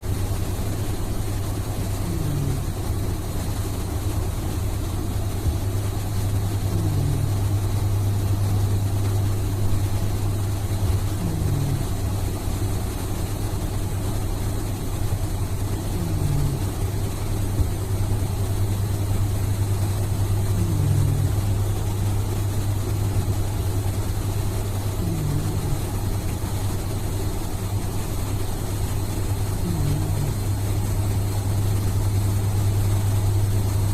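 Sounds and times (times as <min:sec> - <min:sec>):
steady low hum: 0:00.0 - 0:33.9
person snoring: 0:02.0 - 0:02.8, 0:06.6 - 0:08.4, 0:11.1 - 0:12.1, 0:15.8 - 0:16.9, 0:20.4 - 0:22.2, 0:24.8 - 0:26.0, 0:29.5 - 0:30.8.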